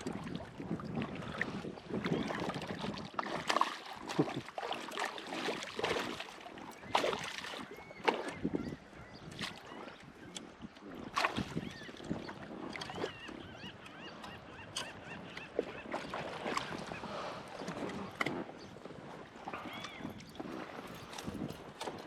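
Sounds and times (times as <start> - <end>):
fish splashing in water: 2.0 - 8.4, 11.0 - 11.9.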